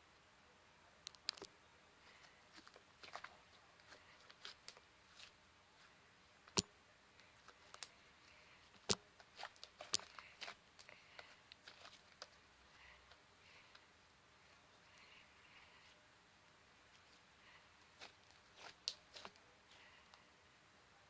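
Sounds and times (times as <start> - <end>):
sticky slime clicks and crackles: 8.8 - 10.9.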